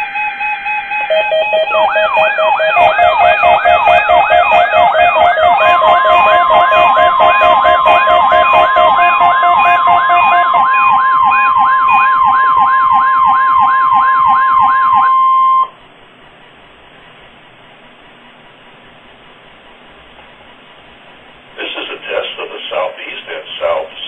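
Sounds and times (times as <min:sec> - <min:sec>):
warbling alert siren: 0:00.0 - 0:15.7
steady warning alarm tone: 0:00.0 - 0:15.8
pulsed beeping: 0:00.1 - 0:15.7
faint radio hiss: 0:16.6 - 0:24.0.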